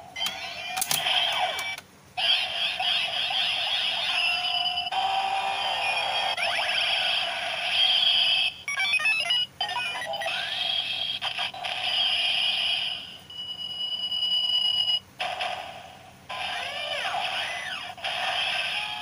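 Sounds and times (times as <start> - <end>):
toy electronic sound effects: 0.2 - 13.1, 16.3 - 19.0.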